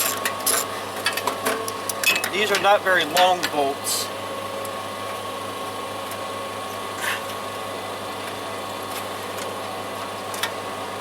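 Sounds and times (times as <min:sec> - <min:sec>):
steady mechanical hum: 0:00.0 - 0:11.0
hand tools clicking and clinking: 0:02.0 - 0:03.6.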